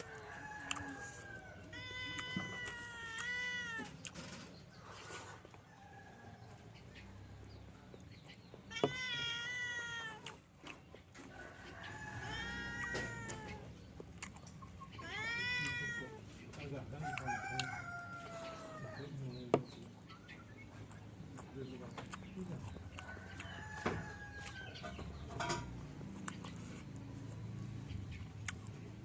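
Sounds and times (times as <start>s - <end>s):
cat meowing: 1.6s - 4.1s, 8.7s - 10.4s, 12.0s - 13.8s, 14.9s - 16.3s.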